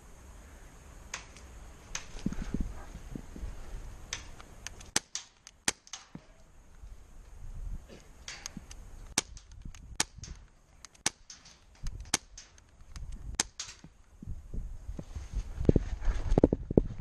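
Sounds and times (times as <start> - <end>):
airsoft gun shots: 4.9 - 6.4.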